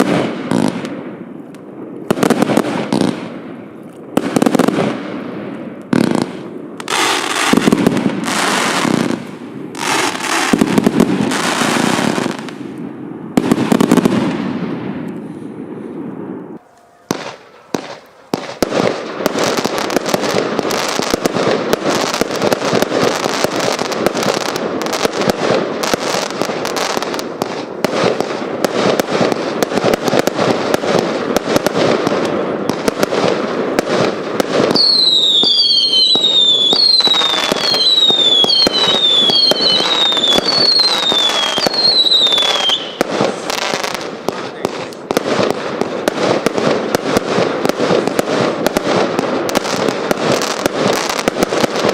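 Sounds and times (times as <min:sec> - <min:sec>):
rapid firework barrage: 0:00.0 - 0:51.9
falling firework whistles: 0:05.9 - 0:12.7, 0:34.7 - 0:44.0.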